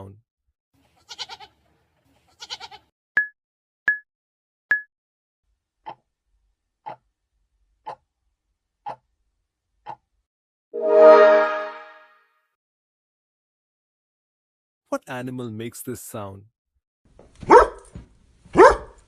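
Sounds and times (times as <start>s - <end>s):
goat bleating: 0.9s - 2.9s.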